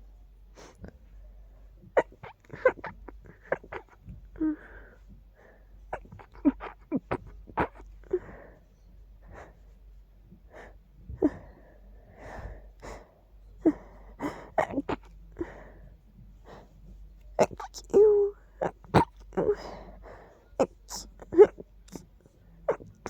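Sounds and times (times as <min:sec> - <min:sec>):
quick breaths: 0:19.5 - 0:20.5.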